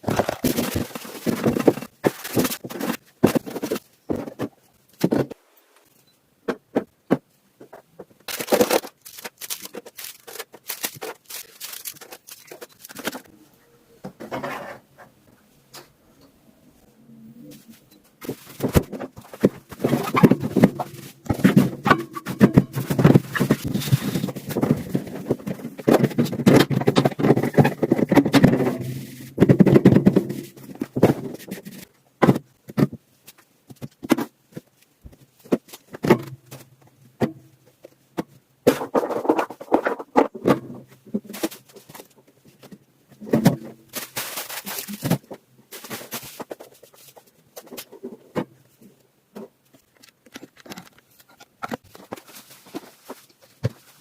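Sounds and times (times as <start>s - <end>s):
clicks knocks and scrapes of containers: 0.0s - 5.4s, 18.2s - 54.0s.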